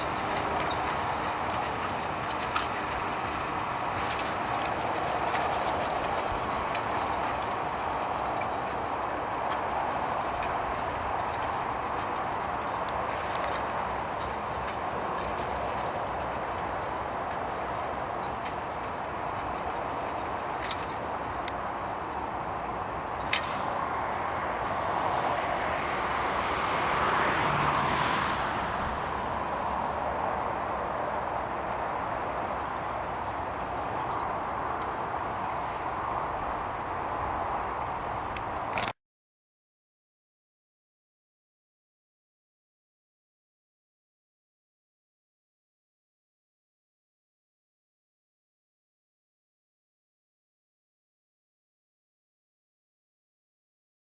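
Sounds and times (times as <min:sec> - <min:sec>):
faint clicks and knocks: 0:00.0 - 0:23.7
tractor engine rumbling: 0:00.0 - 0:39.0.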